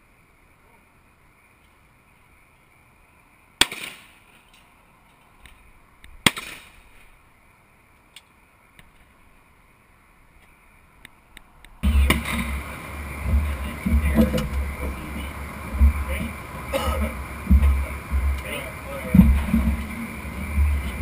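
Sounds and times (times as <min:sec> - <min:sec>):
shotgun shots with echo: 0:03.6 - 0:04.2, 0:06.2 - 0:06.8.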